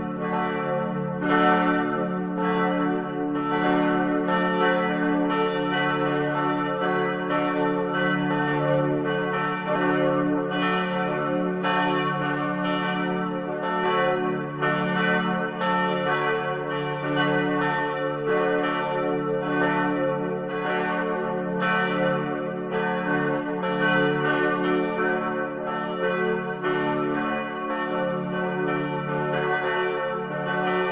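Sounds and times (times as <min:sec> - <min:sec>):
church bells ringing: 0:00.0 - 0:30.9.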